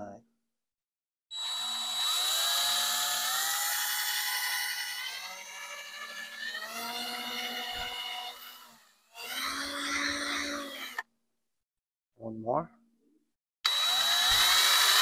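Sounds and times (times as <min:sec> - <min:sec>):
electric drill whining: 0:01.3 - 0:11.0, 0:13.7 - 0:15.0.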